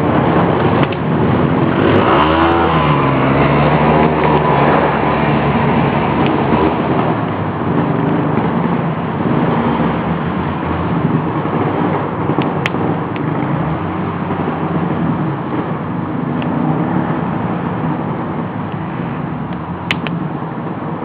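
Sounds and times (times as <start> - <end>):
off-road vehicle engine running: 0.0 - 21.0
sharp clicks: 19.5 - 20.2.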